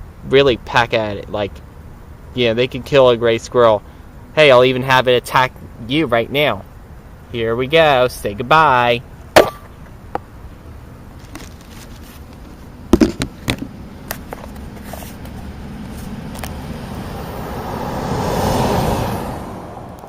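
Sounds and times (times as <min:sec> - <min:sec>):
road vehicle passing: 0:09.0 - 0:20.0.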